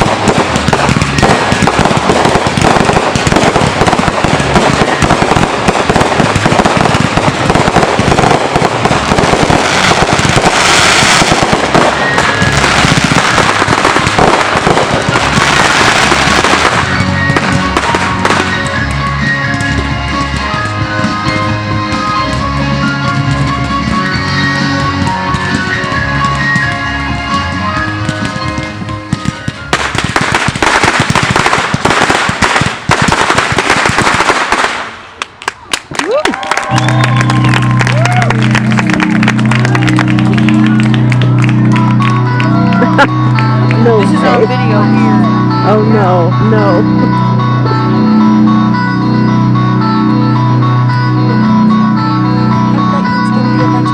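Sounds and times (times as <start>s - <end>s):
fireworks bursting and crackling: 0.0s - 47.2s
rock music with guitar: 11.4s - 29.7s, 37.1s - 53.9s.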